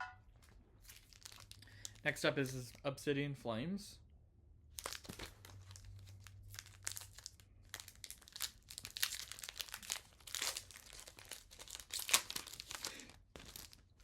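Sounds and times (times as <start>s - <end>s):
wrapper tearing: 0.4s - 2.0s, 4.8s - 14.0s
foil wrapper crinkling: 0.4s - 2.1s, 4.8s - 14.0s.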